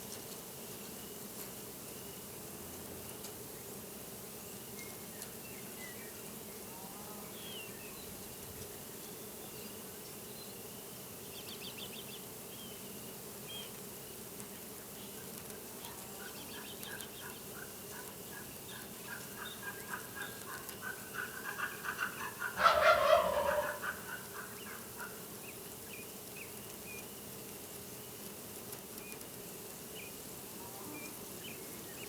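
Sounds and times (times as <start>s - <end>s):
insects buzzing: 0.1s - 32.0s
songbird chirps and trills: 14.5s - 27.1s.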